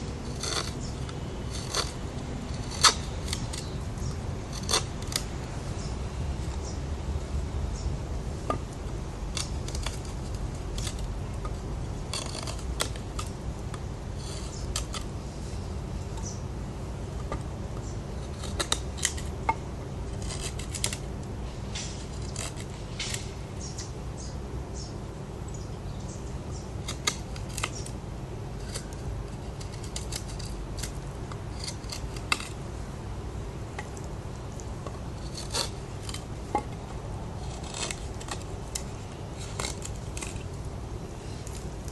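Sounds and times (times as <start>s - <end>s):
knife scraping wood: 0.0s - 6.8s, 9.3s - 15.2s, 18.2s - 19.3s, 20.1s - 23.8s, 26.8s - 28.0s, 28.6s - 32.6s, 33.7s - 40.6s
low background noise: 0.0s - 41.9s.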